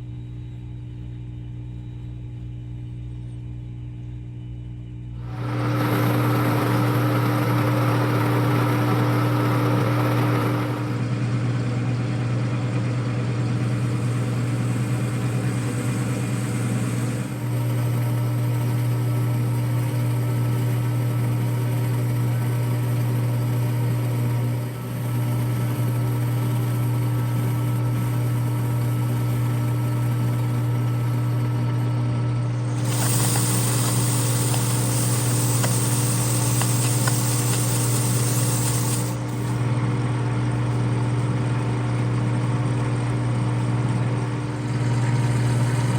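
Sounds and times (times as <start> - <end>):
lathe motor hum: 5.3 - 11.6, 22.0 - 42.4
high-pitched lathe noise: 32.8 - 39.6.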